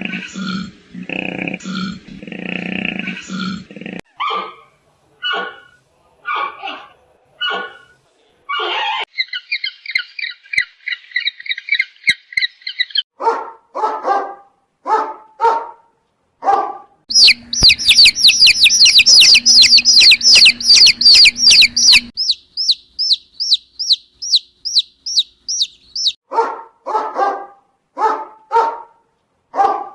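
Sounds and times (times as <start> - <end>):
dog barking: 4.2 - 7.9, 13.2 - 17.0, 26.3 - 29.9
bird's downward-sweeping calls: 17.1 - 26.2
fast high chirping: 17.1 - 26.2.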